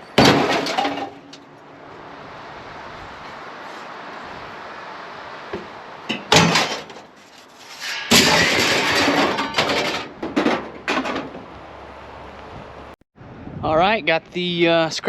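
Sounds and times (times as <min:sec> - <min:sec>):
sharp metal crash: 0:00.0 - 0:01.4, 0:06.1 - 0:11.3
scrap metal clanging: 0:00.0 - 0:01.5, 0:05.6 - 0:11.4.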